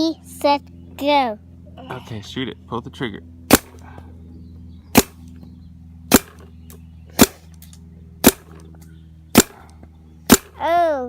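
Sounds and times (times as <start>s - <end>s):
paintball marker firing pops: 6.1s - 6.5s, 9.3s - 9.6s, 10.3s - 10.6s.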